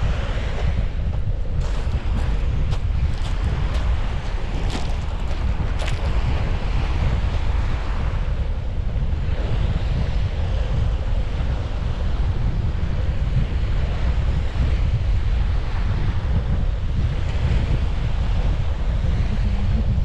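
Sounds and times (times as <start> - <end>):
wind buffeting the microphone: 0.0 - 20.0.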